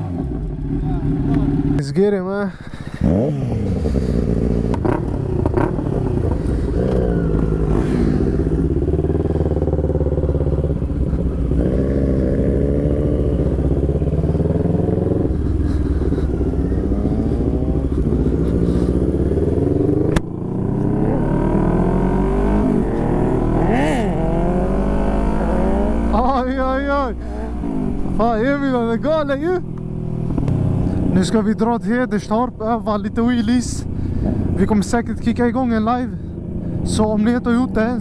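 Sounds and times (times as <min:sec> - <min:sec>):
motorcycle engine shifting up: 0:02.6 - 0:31.6.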